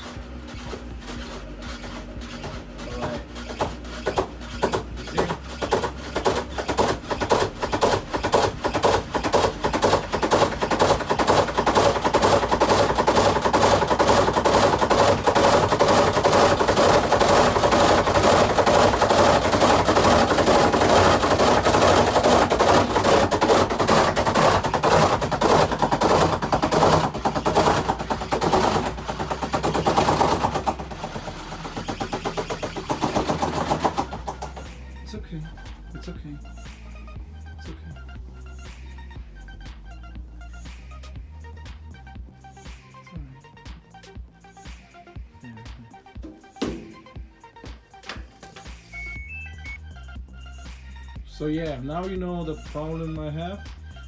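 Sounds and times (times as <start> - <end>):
washer tub knocking in spin cycle: 0.0 - 34.9, 46.2 - 48.7.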